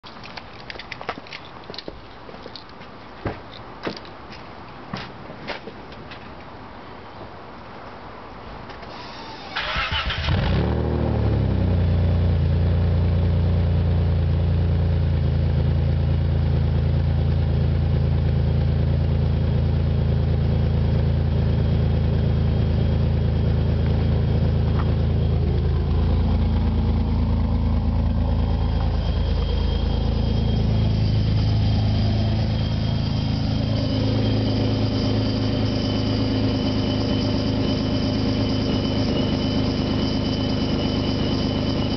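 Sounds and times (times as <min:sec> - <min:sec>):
car engine starting and running: 0:08.9 - 0:41.9
thin high whine: 0:21.9 - 0:41.9.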